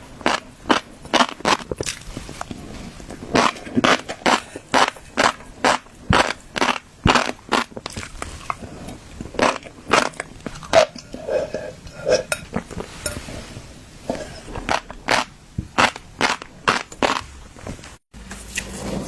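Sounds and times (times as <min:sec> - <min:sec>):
fish roe crunching and popping: 0:00.0 - 0:11.0, 0:14.5 - 0:17.4.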